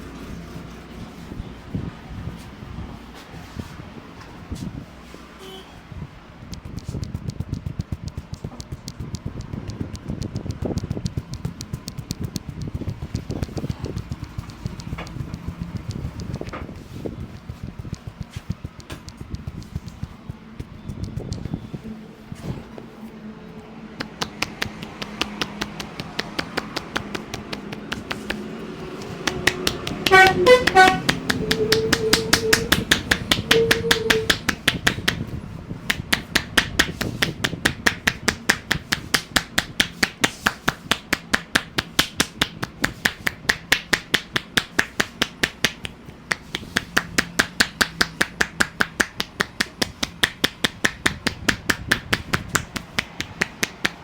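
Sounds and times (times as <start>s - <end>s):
horn-like honk: 5.4s - 5.9s, 30.1s - 32.7s
hands tapping on head: 6.5s - 21.6s, 24.0s - 54.0s.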